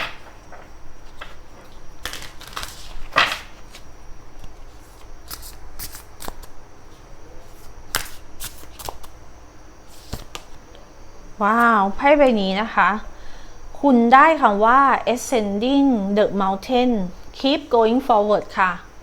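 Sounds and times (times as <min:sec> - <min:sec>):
cards being shuffled: 0:00.0 - 0:09.2, 0:09.9 - 0:10.6.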